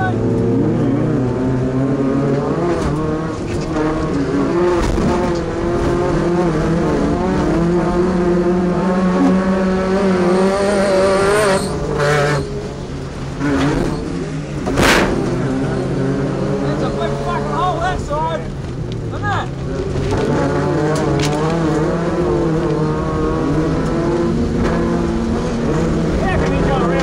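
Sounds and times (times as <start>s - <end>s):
truck engine revving under load: 0.0s - 17.8s, 18.5s - 27.0s
sharp crack: 14.6s - 15.6s.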